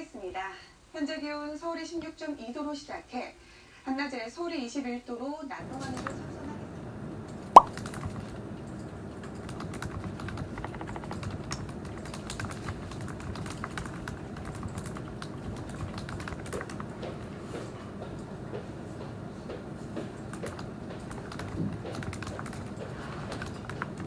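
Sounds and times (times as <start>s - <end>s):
computer keyboard typing: 9.4s - 16.9s, 20.4s - 24.0s.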